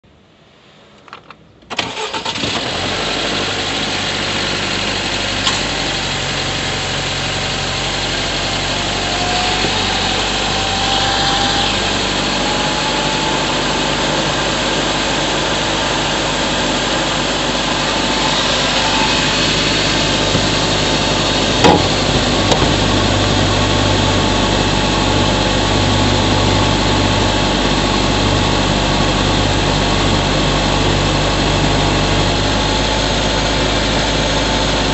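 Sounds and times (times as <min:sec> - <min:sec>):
car engine cranking and idling: 0:00.9 - 0:34.9
faint rising whine: 0:07.3 - 0:31.8.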